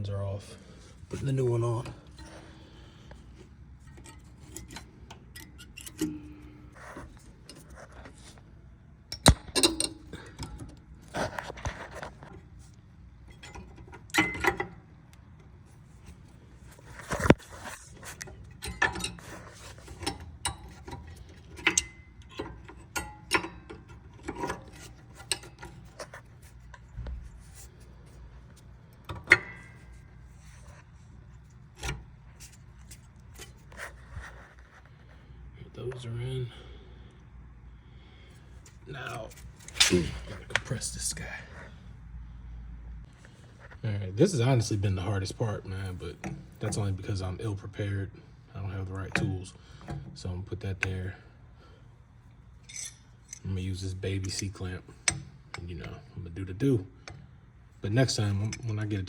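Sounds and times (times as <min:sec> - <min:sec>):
metal clicks and scrapes: 0:03.8 - 0:08.4, 0:38.6 - 0:40.8, 0:52.6 - 0:53.6.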